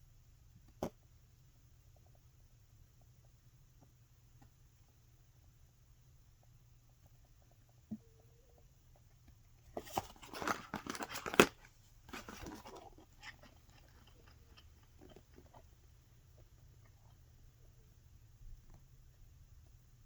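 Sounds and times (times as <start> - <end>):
paper crinkling and rustling: 9.8 - 15.6.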